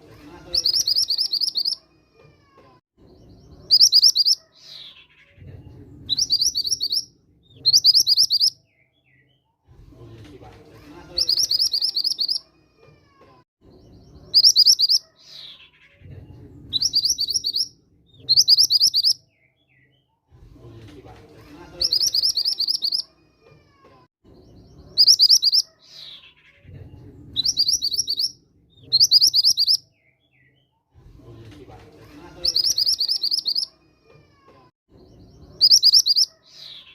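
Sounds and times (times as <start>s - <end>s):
bird trilling: 0.5s - 1.8s, 3.6s - 5.4s, 6.1s - 8.6s, 11.2s - 12.5s, 14.2s - 16.0s, 16.7s - 19.2s, 21.8s - 23.1s, 24.8s - 26.6s, 27.4s - 29.8s, 32.4s - 33.7s, 35.5s - 36.9s.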